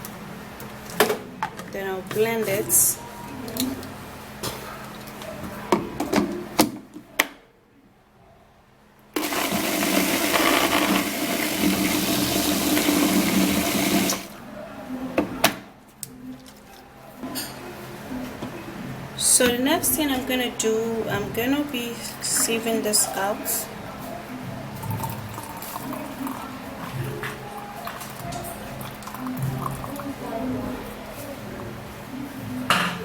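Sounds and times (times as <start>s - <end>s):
kitchen blender running: 9.2s - 14.4s.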